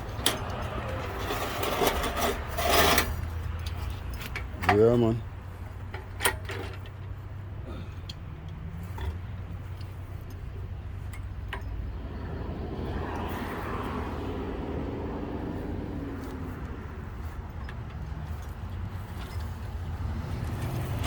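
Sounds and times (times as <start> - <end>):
vehicle engine running: 5.2 - 21.0.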